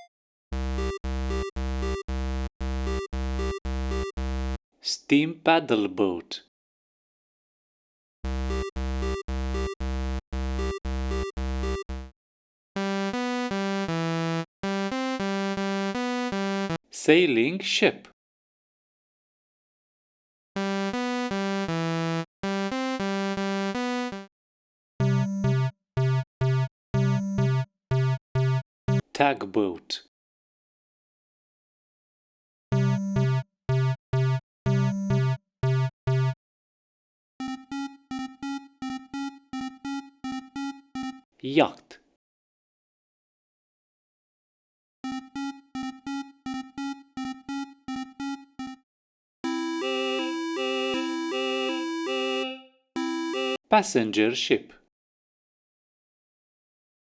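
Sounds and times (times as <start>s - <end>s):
chiptune tune: 0.0s - 4.6s, 8.3s - 12.1s, 12.8s - 16.8s, 20.6s - 24.3s, 25.0s - 29.1s, 32.7s - 36.4s, 37.4s - 41.2s, 45.0s - 48.8s, 49.4s - 53.7s
low chiptune note pulsing: 0.6s - 4.6s, 8.3s - 12.1s, 45.1s - 48.8s, 49.4s - 52.4s, 53.0s - 53.6s
buzzy electronic horn toots: 49.4s - 53.6s.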